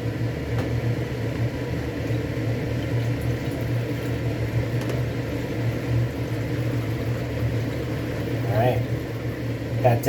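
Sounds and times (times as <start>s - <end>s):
appliance humming: 0.0s - 10.0s
broth pouring into a bowl: 2.0s - 9.8s.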